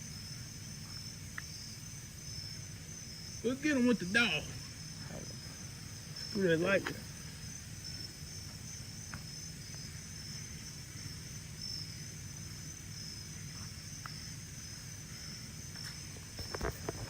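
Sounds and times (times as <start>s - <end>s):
insects chirring: 0.0s - 17.0s.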